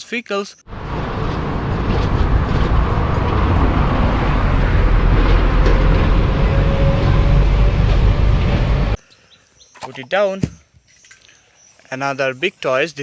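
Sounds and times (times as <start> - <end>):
vehicle engine rumbling: 0.6 - 9.0.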